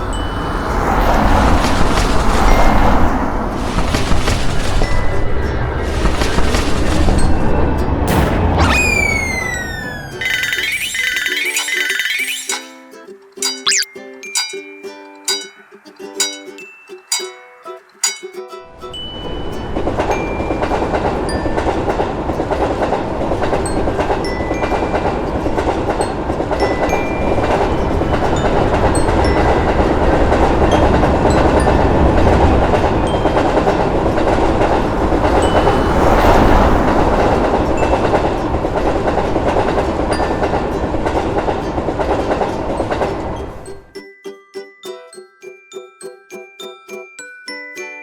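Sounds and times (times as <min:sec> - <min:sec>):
rail clickety-clack: 0:00.0 - 0:08.4, 0:19.1 - 0:43.9
train rumbling past: 0:00.0 - 0:12.1, 0:18.7 - 0:43.9.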